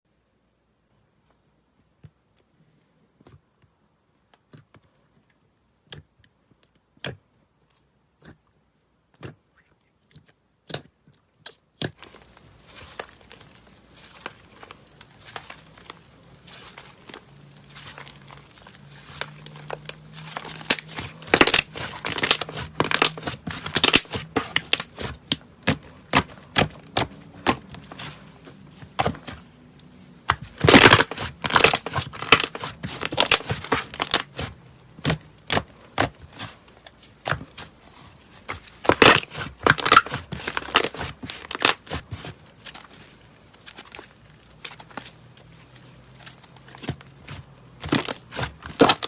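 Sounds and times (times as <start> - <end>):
slime squished by hand: 8.1 - 49.0.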